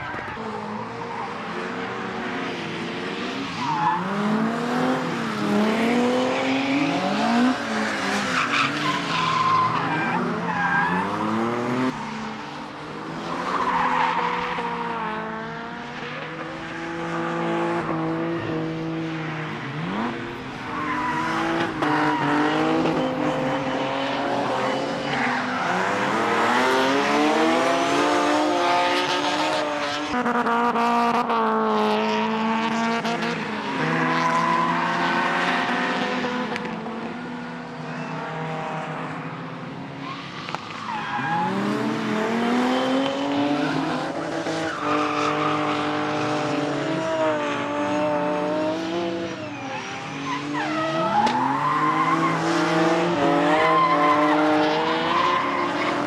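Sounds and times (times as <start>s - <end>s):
car engines revving: 0.0s - 56.0s
tyre squeal: 49.2s - 56.0s.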